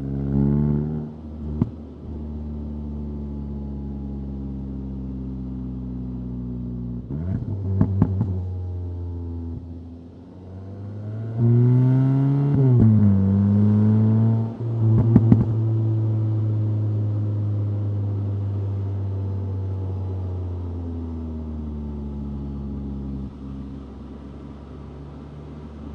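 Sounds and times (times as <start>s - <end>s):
car engine revving: 7.0s - 20.2s.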